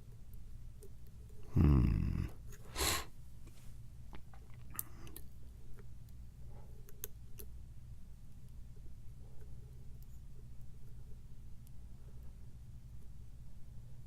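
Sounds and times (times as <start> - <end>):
sharp exhale through nose: 2.6 - 3.2.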